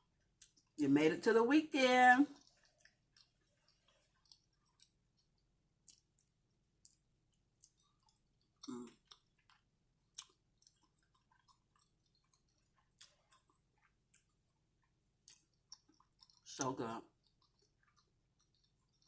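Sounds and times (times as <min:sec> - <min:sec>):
close-miked chewing: 0:00.0 - 0:00.8, 0:02.1 - 0:19.0
mouth clicks and smacks: 0:02.4 - 0:07.0, 0:07.6 - 0:16.6.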